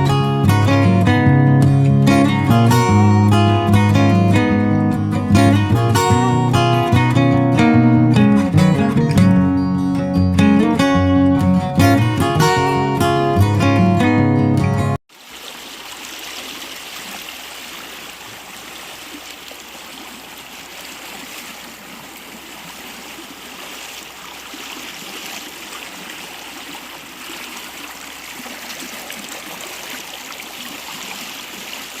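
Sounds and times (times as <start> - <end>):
brook flowing: 15.0 - 32.0.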